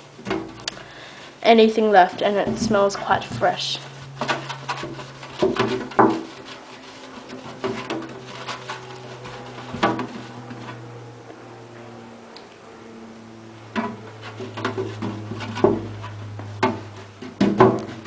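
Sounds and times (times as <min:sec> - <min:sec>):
low steady hum: 0:00.0 - 0:18.0
scourer scrubbing plastic: 0:02.0 - 0:12.2, 0:13.4 - 0:18.0
plastic cage clunks and knocks: 0:04.2 - 0:06.5, 0:13.8 - 0:18.0.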